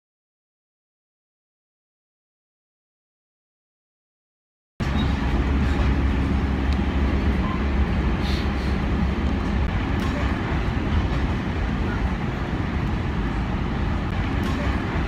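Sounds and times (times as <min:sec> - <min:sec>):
moving vehicle rumble and hiss: 0:04.8 - 0:15.0.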